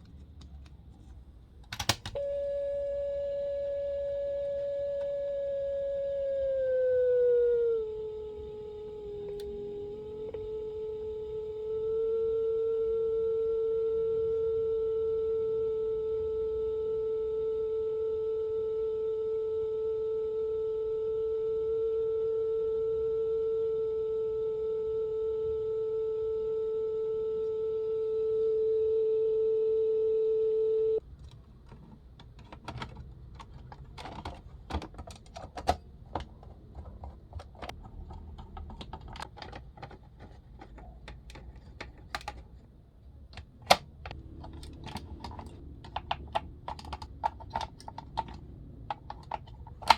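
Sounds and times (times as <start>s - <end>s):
steady test tone: 2.2s - 31.0s.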